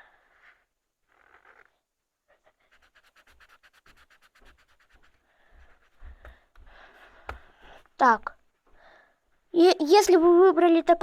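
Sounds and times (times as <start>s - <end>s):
colouring strokes scratching on paper: 2.4s - 6.3s.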